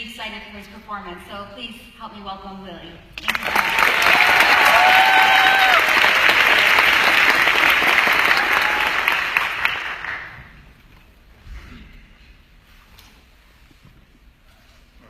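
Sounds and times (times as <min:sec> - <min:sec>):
audience applauding: 0:03.2 - 0:10.5
crowd calling out: 0:04.0 - 0:06.3.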